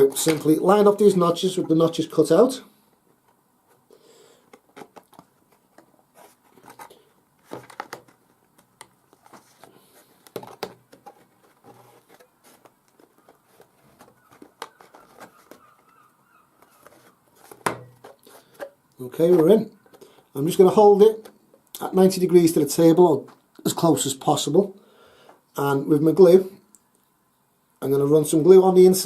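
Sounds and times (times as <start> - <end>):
card tapping and rustling: 4.4 - 20.2.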